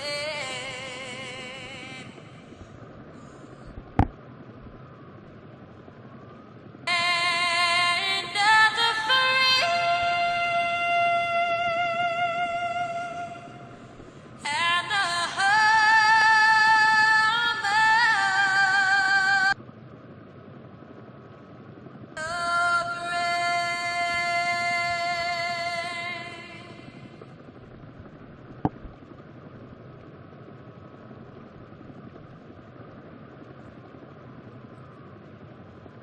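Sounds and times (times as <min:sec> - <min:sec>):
high singing voice: 0:00.0 - 0:02.6, 0:06.9 - 0:13.8, 0:14.4 - 0:19.6, 0:22.2 - 0:27.1
low noisy hum: 0:00.0 - 0:36.0.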